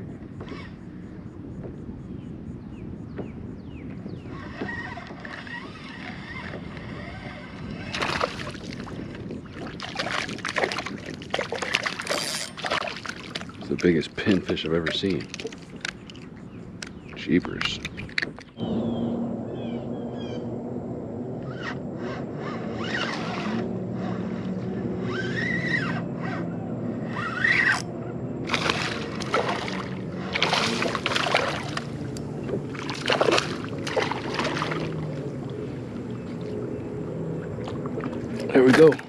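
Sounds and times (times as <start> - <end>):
steady low hum: 0.0 - 39.0
water splashing against kayak: 4.6 - 18.6, 28.4 - 39.0.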